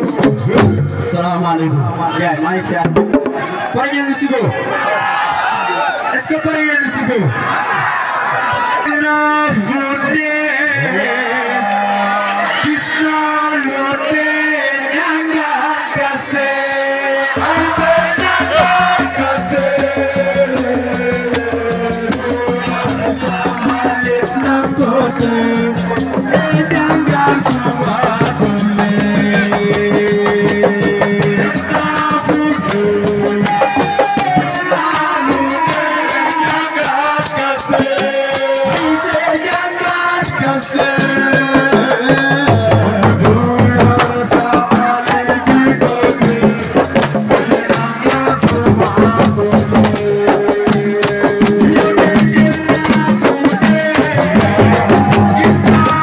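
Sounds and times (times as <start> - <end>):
shakers and drums rhythm: 0.0 - 1.4, 2.0 - 3.8, 15.5 - 56.0
person singing: 13.2 - 56.0.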